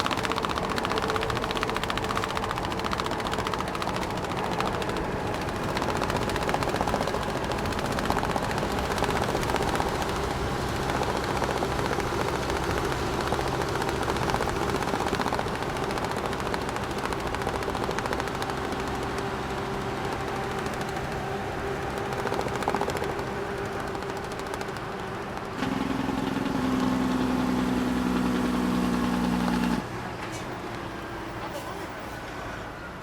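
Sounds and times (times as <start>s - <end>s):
straps flapping and rattling: 0.0s - 25.7s
truck engine running: 0.0s - 33.0s.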